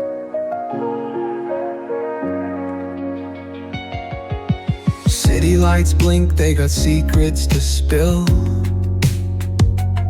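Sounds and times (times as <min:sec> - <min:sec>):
slow soft instrumental melody: 0:00.0 - 0:10.0.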